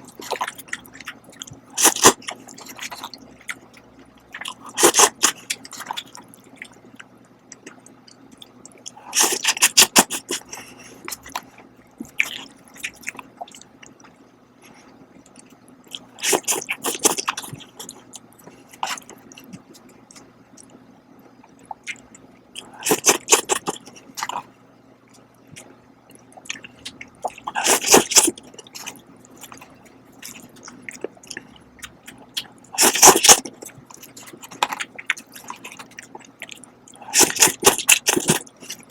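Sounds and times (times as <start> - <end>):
person chewing: 0.0 - 38.9
person slurping noodles: 27.5 - 28.4, 32.8 - 33.4, 37.0 - 38.4.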